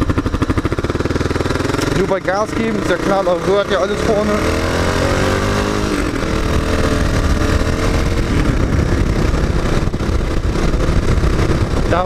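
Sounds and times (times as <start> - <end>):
motorcycle engine running: 0.0 - 12.0
wind noise on microphone: 4.1 - 12.0.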